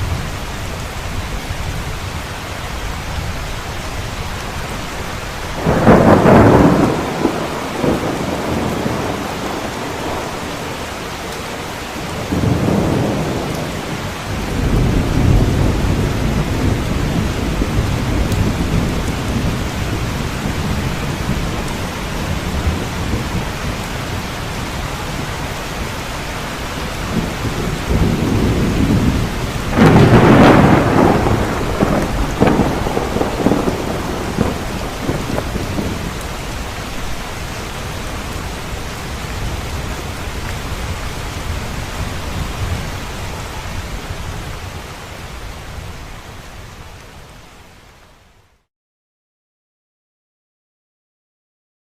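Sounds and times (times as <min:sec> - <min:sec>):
heavy rain: 0:00.0 - 0:48.7
rolling thunder: 0:05.5 - 0:25.4, 0:26.8 - 0:40.2
thunder clap: 0:05.6 - 0:10.8, 0:12.1 - 0:23.4, 0:27.1 - 0:36.4.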